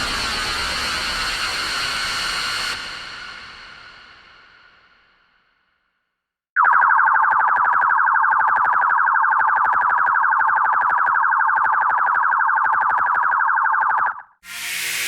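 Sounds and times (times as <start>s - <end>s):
pulsing electronic alarm tone: 6.6s - 14.4s.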